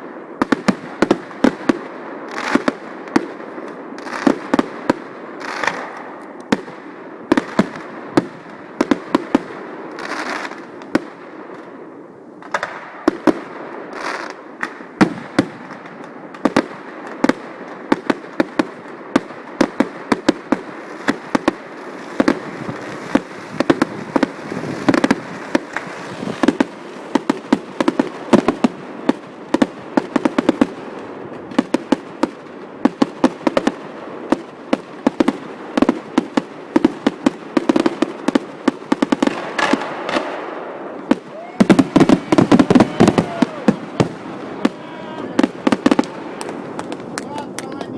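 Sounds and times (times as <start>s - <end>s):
crackling hiss of fireworks: 0.0s - 47.9s.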